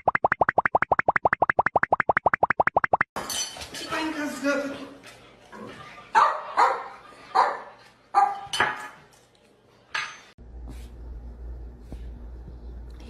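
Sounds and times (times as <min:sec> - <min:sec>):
dog barking: 0:06.1 - 0:08.5.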